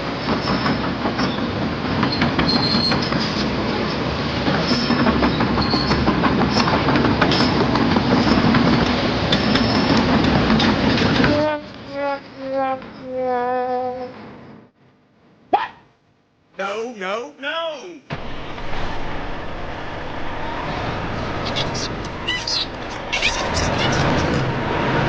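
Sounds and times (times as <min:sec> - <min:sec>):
machinery rumble with rattling clicks: 0:00.0 - 0:11.9, 0:18.1 - 0:25.0.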